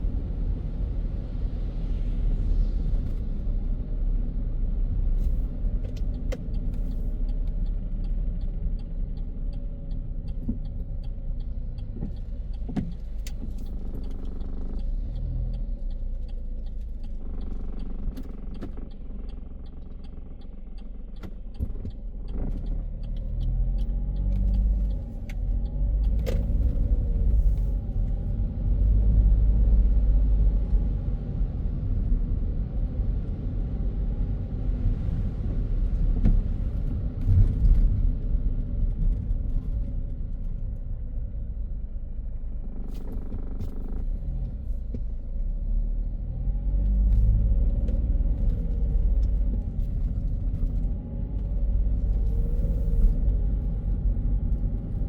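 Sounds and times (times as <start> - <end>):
car engine and tyres rumbling: 0.0 - 55.0.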